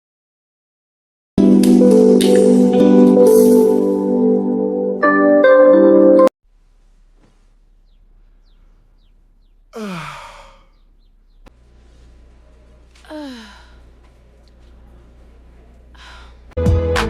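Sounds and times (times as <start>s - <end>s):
person yawning: 9.7s - 10.9s, 13.0s - 13.8s.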